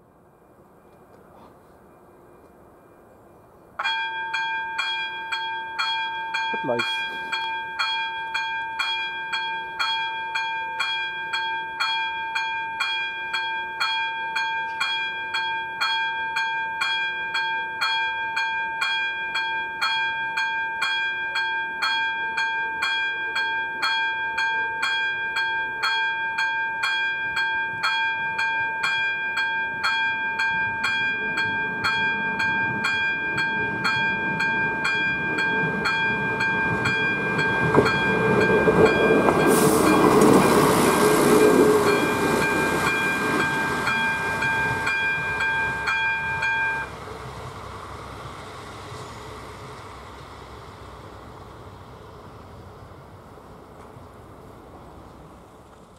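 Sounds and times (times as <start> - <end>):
train rumble: 0.0 - 12.3, 27.8 - 55.9
level-crossing bell ringing: 3.8 - 46.9.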